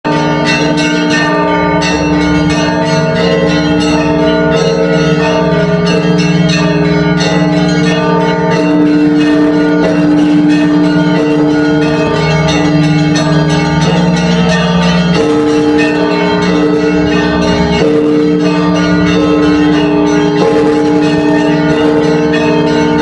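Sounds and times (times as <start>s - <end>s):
hum of large bells: 0.1s - 23.0s
small bells striking: 0.1s - 23.0s.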